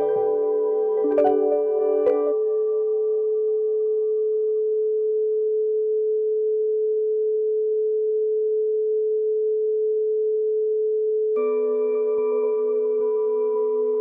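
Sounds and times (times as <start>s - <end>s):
fuller chord: 0.0s - 3.3s
sustained pure tone: 0.0s - 5.5s, 11.4s - 14.0s.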